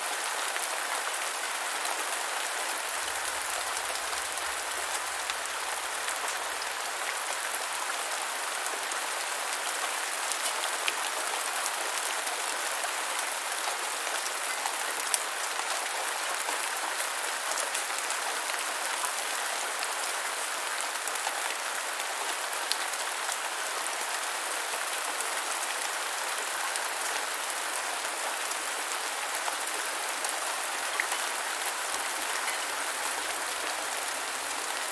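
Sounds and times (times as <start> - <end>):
light rain falling: 0.0 - 34.9.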